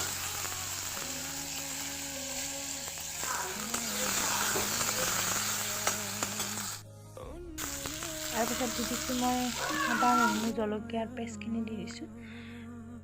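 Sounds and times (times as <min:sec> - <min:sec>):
onion and tomato sizzling in oil: 0:00.0 - 0:06.8, 0:07.6 - 0:10.6.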